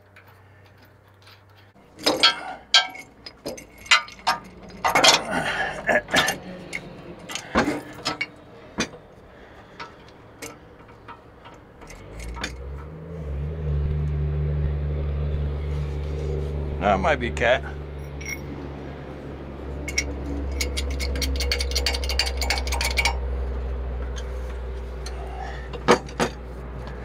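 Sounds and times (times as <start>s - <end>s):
metal parts clanking: 0.0s - 13.0s, 18.0s - 18.6s, 19.8s - 23.3s, 24.1s - 27.0s.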